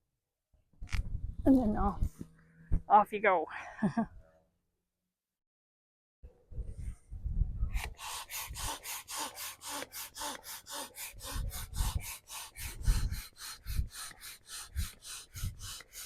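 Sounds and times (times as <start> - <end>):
hand pump hissing strokes: 7.7 - 16.0.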